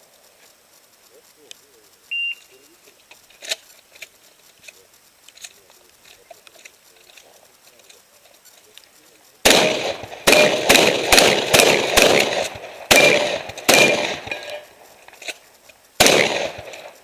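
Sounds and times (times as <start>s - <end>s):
shotgun shots: 9.4s - 14.9s, 16.0s - 17.0s.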